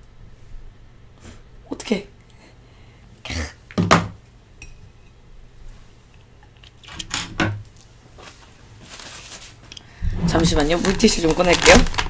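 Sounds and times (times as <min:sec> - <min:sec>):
objects knocking on a table: 0:03.8 - 0:04.2.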